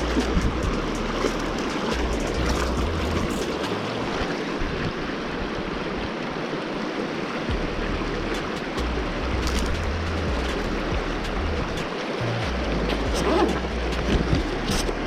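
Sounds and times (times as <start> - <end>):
low rumble: 0.0 - 3.7, 7.5 - 15.0
water rushing over shoals: 0.0 - 15.0.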